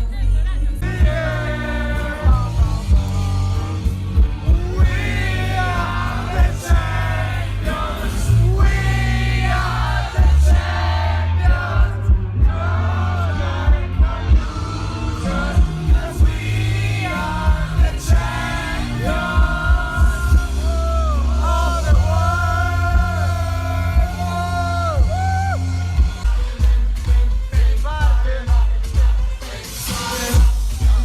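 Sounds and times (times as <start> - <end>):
heavy bass: 0.0 - 31.0
person singing: 4.4 - 11.9, 12.5 - 31.0.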